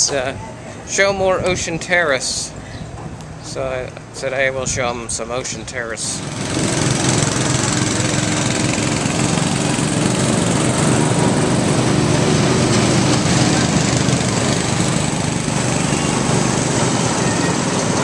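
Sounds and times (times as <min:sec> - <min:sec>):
small engine running: 0:06.2 - 0:18.0.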